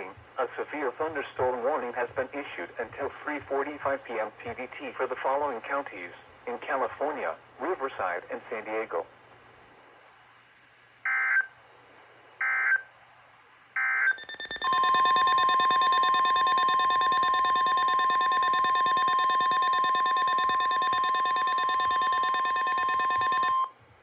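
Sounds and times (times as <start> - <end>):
fast pulsing buzz: 14.1 - 23.6
loud steady alert tone: 14.1 - 23.7
warbling digital data tones: 14.1 - 23.7.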